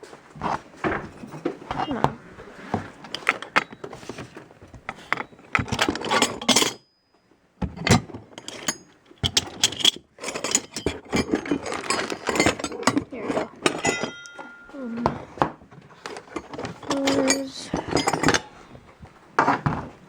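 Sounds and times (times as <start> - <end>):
loose metal hardware rattling: 7.9 - 14.8, 16.0 - 18.6.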